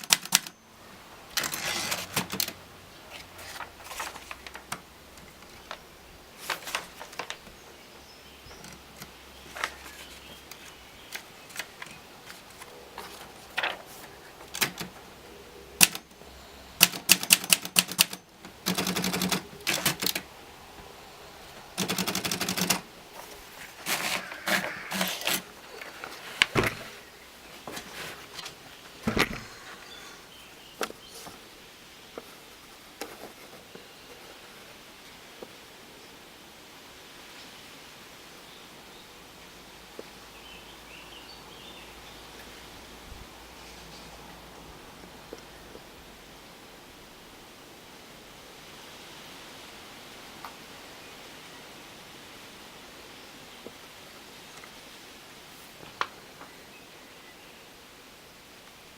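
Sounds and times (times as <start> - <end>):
typewriter keys striking: 0.0 - 0.6, 1.3 - 2.6, 14.4 - 15.0, 15.8 - 16.0, 16.8 - 20.3, 21.8 - 22.8
rapid ratcheting clicks: 21.8 - 22.8.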